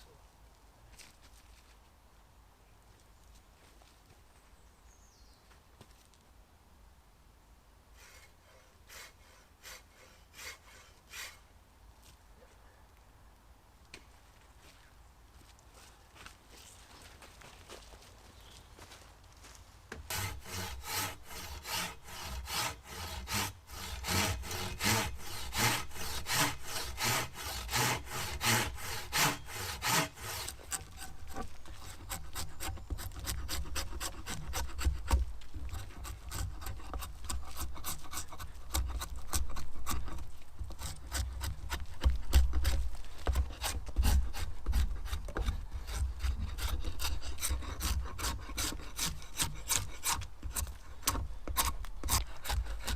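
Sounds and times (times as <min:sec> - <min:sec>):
hand saw cutting wood: 0:08.0 - 0:11.4, 0:19.9 - 0:52.9.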